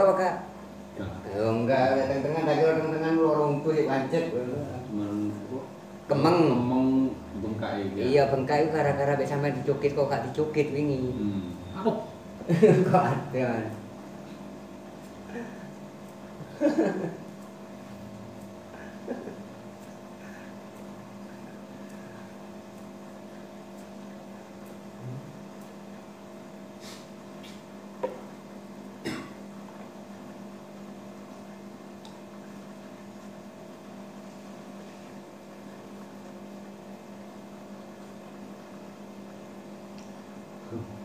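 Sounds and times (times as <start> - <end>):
electrical hum: 0.0 - 41.0.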